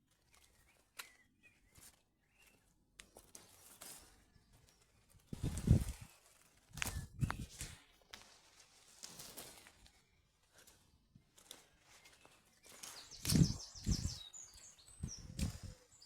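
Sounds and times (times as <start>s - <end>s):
footsteps outdoors: 1.7s - 16.0s
bird chirping: 12.2s - 16.0s.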